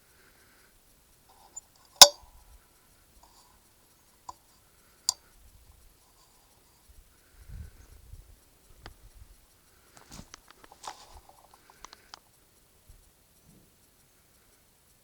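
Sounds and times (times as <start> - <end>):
sharp clicks: 10.3 - 12.3.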